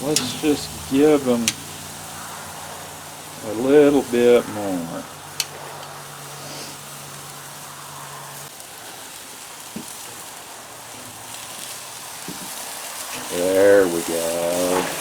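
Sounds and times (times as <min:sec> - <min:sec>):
low hum: 0:00.0 - 0:03.6
steaks sizzling on a grill: 0:00.0 - 0:15.0.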